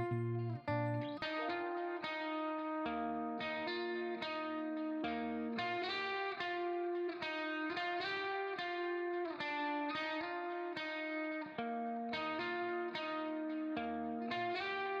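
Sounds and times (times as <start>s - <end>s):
plucked guitar melody: 0.0s - 15.0s.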